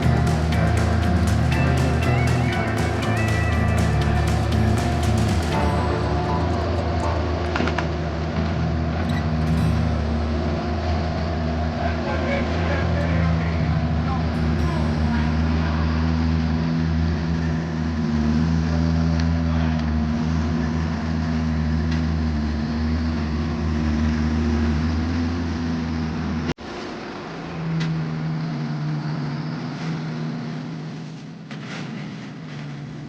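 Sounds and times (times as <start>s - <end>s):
skid steer engine running: 0.0s - 7.8s.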